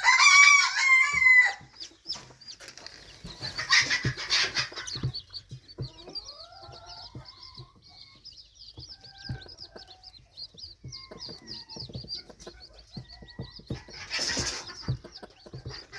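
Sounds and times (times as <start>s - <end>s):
chicks peeping: 0.0s - 15.9s
low drawn-out clucking calls: 2.8s - 5.2s.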